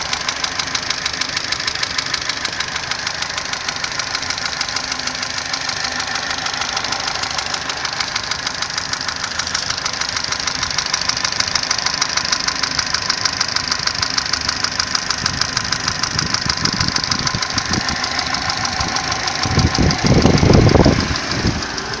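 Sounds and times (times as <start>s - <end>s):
engine knocking clatter: 0.0s - 22.0s
low rumble: 14.9s - 22.0s.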